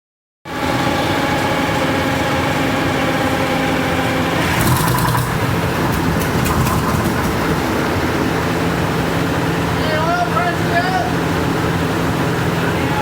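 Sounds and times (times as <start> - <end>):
diesel engine running: 0.5 - 13.0
engine clicking: 4.4 - 9.2.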